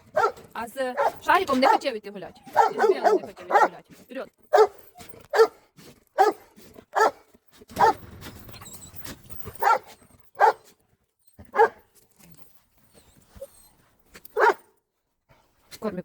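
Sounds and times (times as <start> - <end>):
dog barking: 0.0 - 3.8, 4.5 - 5.6, 6.2 - 8.0, 9.6 - 10.7, 11.5 - 11.8, 14.3 - 14.7.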